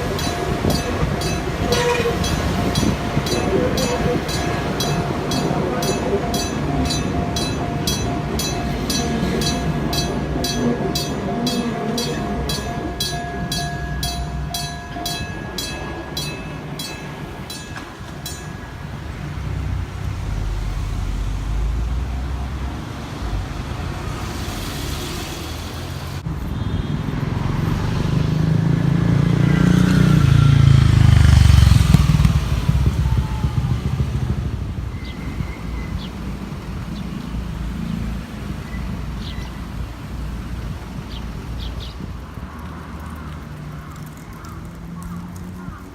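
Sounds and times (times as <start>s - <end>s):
railway crossing alarm ringing: 0.0s - 19.7s
vehicle passing with whine: 0.0s - 26.2s, 27.3s - 34.9s
road traffic: 0.0s - 45.9s.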